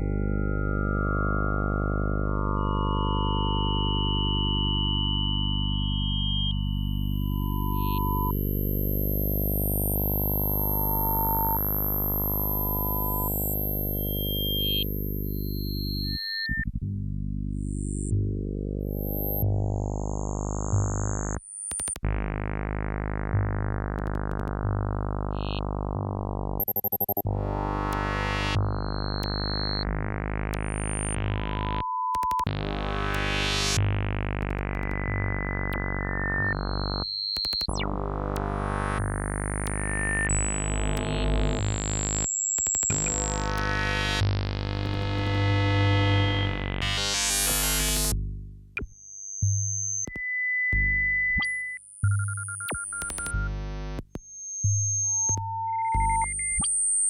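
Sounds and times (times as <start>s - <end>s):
low buzzy synthesizer drone: 0.0s - 15.7s, 16.7s - 21.4s, 22.1s - 31.8s, 32.5s - 37.0s, 37.7s - 42.2s, 42.9s - 48.7s.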